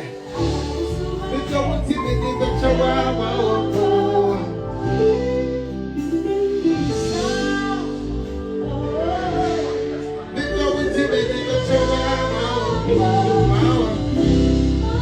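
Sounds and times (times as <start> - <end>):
live band music: 0.0 - 15.0
person singing: 0.0 - 15.0.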